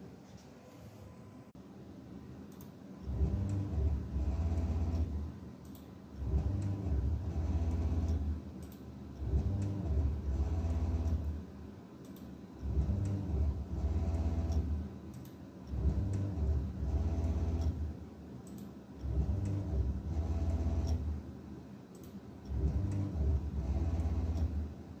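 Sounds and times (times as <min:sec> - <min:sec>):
stepper motors humming: 0:06.2 - 0:08.4, 0:09.1 - 0:11.4, 0:22.4 - 0:24.8.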